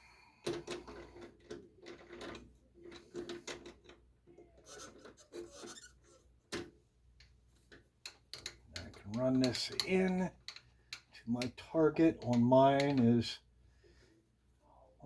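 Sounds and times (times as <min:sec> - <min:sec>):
metal parts clicking and tapping: 0:00.4 - 0:04.0, 0:06.5 - 0:13.2.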